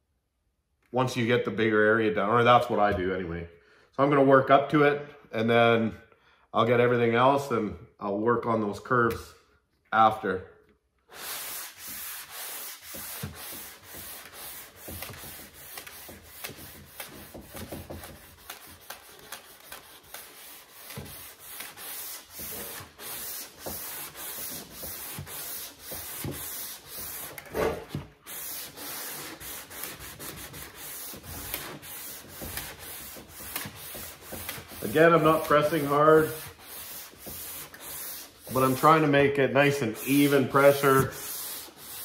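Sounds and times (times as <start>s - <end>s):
sandpaper strokes on metal panel: 11.1s - 27.4s, 28.2s - 42.0s.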